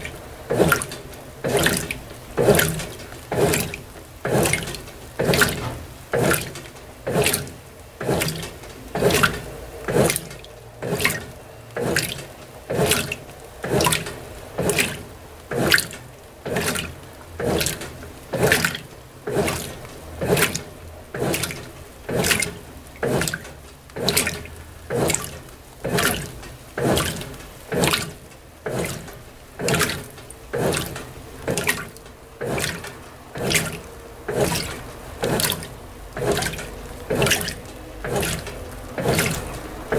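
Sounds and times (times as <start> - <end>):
washing machine sloshing water: 0.0 - 39.9.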